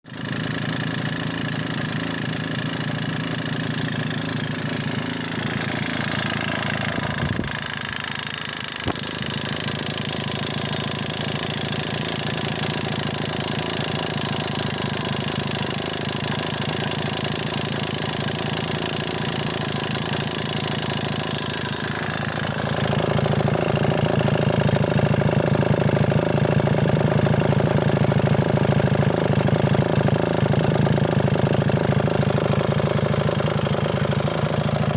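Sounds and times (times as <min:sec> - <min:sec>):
moped engine rattling: 0:00.0 - 0:34.9.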